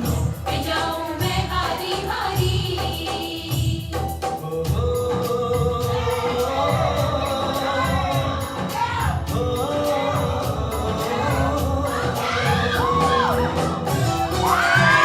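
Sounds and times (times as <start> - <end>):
person singing: 0.0 - 15.0
song with steady beat: 0.0 - 15.0.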